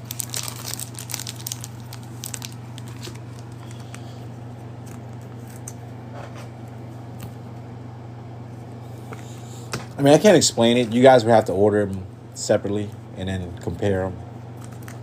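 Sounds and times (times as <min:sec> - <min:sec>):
trading cards crinkling: 0:00.0 - 0:04.2
steady low hum: 0:00.0 - 0:15.0.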